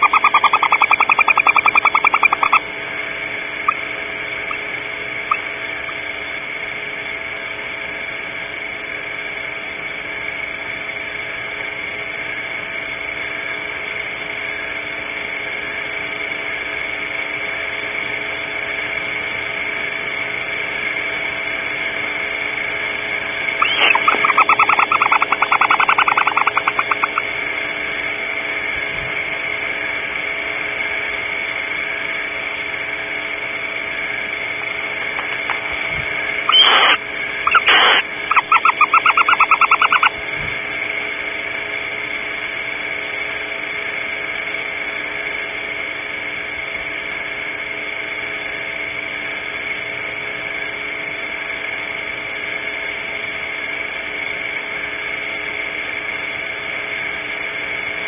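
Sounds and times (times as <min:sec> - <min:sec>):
high steady tone: 0:00.0 - 0:02.7, 0:03.6 - 0:06.0, 0:23.6 - 0:27.4, 0:35.8 - 0:40.2
owl calling: 0:00.0 - 0:02.7, 0:03.6 - 0:06.0, 0:23.6 - 0:27.4, 0:36.4 - 0:40.3
electrical hum: 0:00.0 - 0:58.0.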